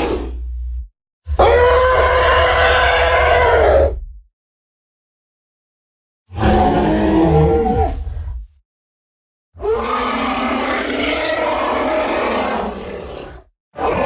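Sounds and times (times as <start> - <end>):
creature roaring: 1.4 - 3.9, 6.3 - 8.1, 9.6 - 14.0.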